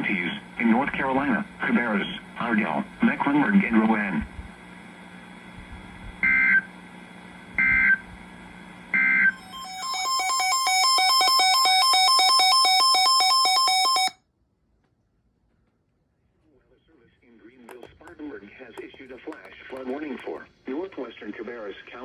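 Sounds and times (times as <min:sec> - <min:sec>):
two-tone digital data chirps: 0:09.4 - 0:14.2.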